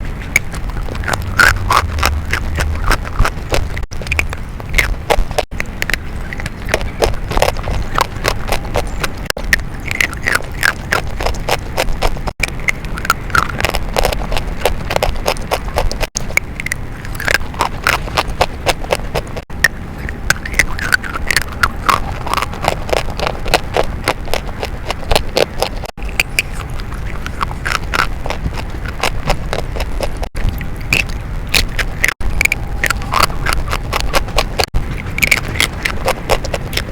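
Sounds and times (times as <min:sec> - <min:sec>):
chalk crunching and crumbling: 0:31.0 - 0:36.9.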